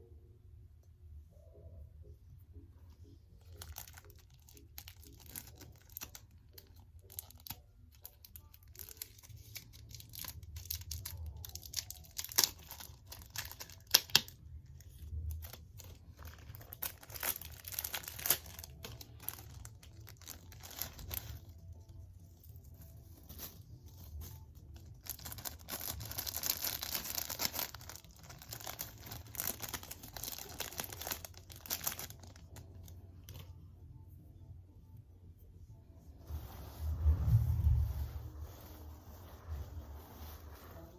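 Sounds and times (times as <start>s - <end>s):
faint low hum: 0.0s - 40.9s
debris and paper crinkling: 3.4s - 33.5s.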